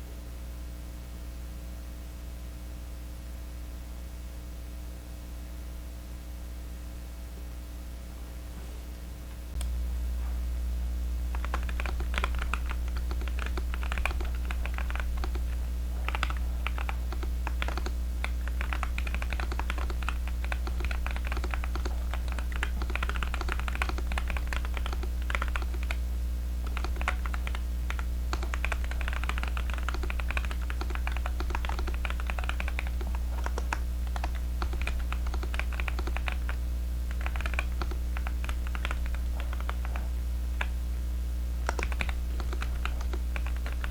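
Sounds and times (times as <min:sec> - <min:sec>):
low hum: 0:05.5 - 0:43.9
mechanical keyboard typing: 0:11.3 - 0:26.0, 0:26.6 - 0:40.8, 0:41.6 - 0:43.9.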